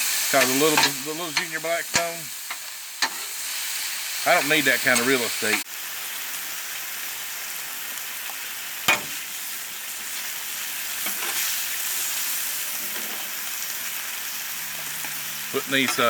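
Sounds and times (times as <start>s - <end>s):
food sizzling on a griddle: 0.0s - 16.0s
spatula clacking on griddle: 0.4s - 3.4s, 8.9s - 9.2s, 11.0s - 11.6s.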